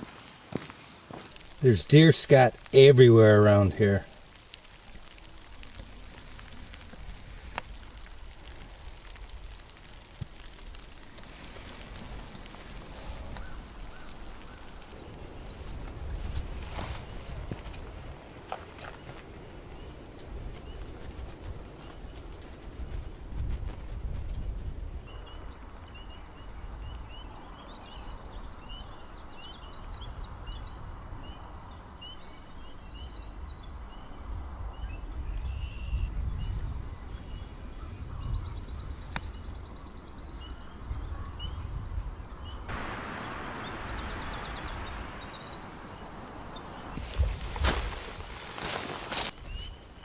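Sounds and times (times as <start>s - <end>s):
steady hiss: 0.0s - 18.4s, 42.6s - 50.0s
songbirds chirping and trilling: 24.1s - 50.0s.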